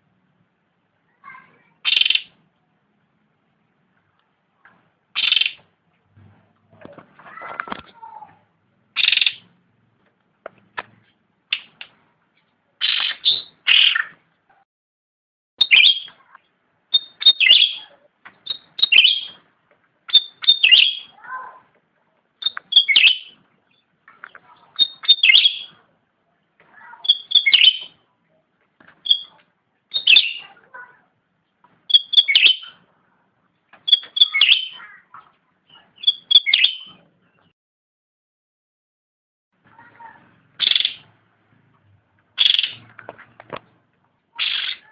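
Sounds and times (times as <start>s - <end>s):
songbird calling: 1.8s - 2.4s, 5.2s - 5.6s, 9.0s - 9.5s, 12.8s - 14.2s, 15.6s - 16.3s, 16.9s - 19.4s, 20.1s - 21.3s, 22.4s - 25.8s, 26.8s - 28.0s, 29.0s - 30.6s, 31.9s - 32.8s, 33.8s - 35.0s, 35.7s - 37.5s, 40.0s - 41.1s, 42.4s - 42.9s, 44.3s - 44.9s.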